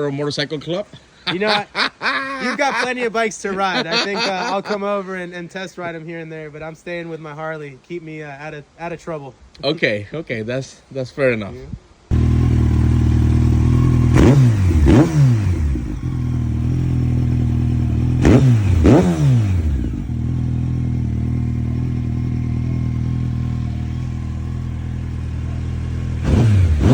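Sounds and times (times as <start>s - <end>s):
engine revving: 12.1s - 26.9s
motorcycle engine idling: 12.1s - 26.9s.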